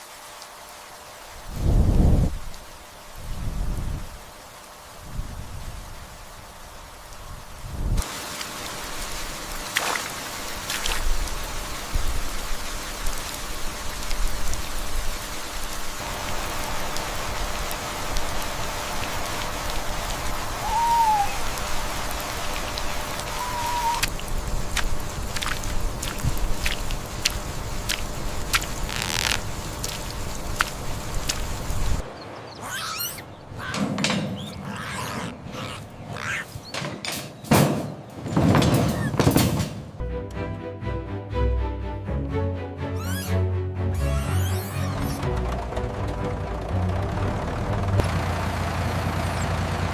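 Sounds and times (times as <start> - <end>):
heavy rain falling: 0.0 - 32.5, 44.0 - 49.9
short animal calls: 20.6 - 21.6, 23.2 - 24.1, 32.5 - 36.7
music: 40.0 - 48.0.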